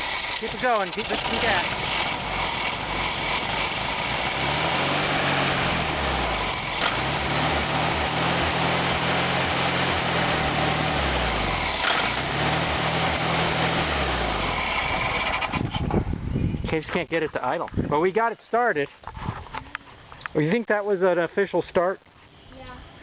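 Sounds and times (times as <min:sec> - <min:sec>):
car engine revving up and down: 0:00.0 - 0:15.8.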